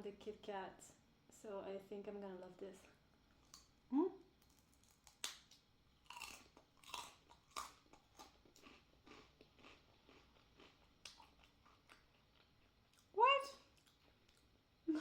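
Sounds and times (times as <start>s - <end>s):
crunchy bite into rice cracker: 4.4s - 12.1s
crunchy chewing: 4.4s - 14.6s.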